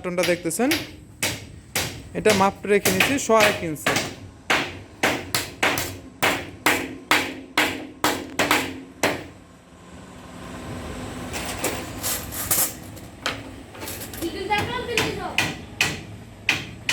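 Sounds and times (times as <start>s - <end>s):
hammer striking nails: 0.2s - 9.3s, 14.6s - 16.9s.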